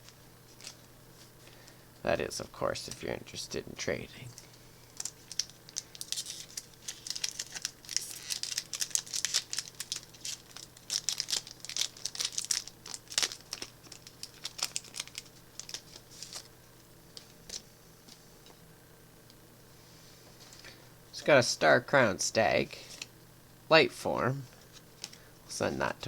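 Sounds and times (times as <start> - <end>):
cards being handled: 0.0 - 1.4, 4.3 - 16.5
plastic wrapper crinkling and tearing: 4.4 - 16.5.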